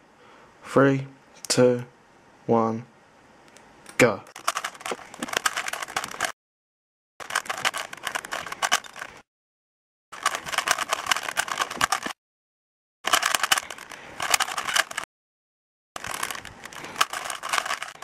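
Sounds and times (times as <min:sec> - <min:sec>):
puzzle cube plastic clicking: 0:04.4 - 0:06.3, 0:07.2 - 0:09.2, 0:10.2 - 0:12.2, 0:13.1 - 0:15.1, 0:16.0 - 0:18.0.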